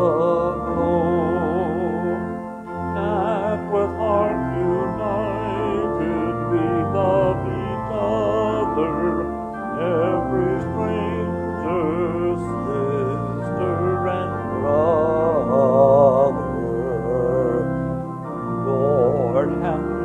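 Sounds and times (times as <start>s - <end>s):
sustained accompaniment chords: 0.0s - 20.0s
voices singing a hymn: 0.0s - 20.0s.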